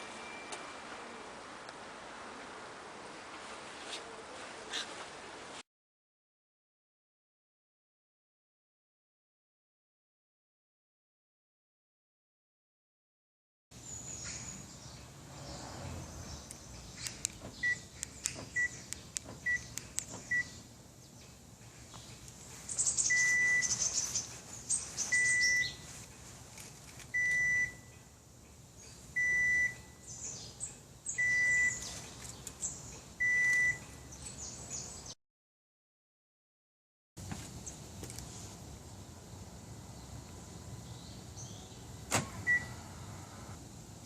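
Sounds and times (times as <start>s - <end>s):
clicks: 16.5s - 20.5s
electronic beeps: 23.1s - 23.8s, 25.1s - 25.8s, 27.2s - 27.9s, 29.2s - 29.9s, 31.2s - 31.8s, 33.2s - 33.8s.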